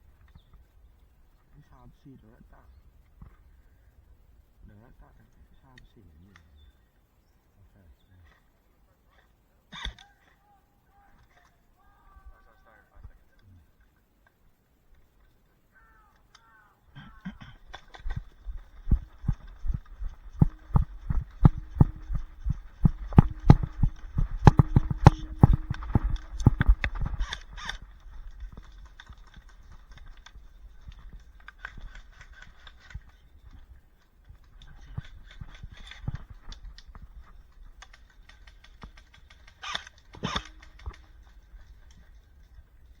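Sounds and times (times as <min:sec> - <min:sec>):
running footsteps: 0:17.6 - 0:31.1
gear knocking and jostling: 0:17.7 - 0:33.7.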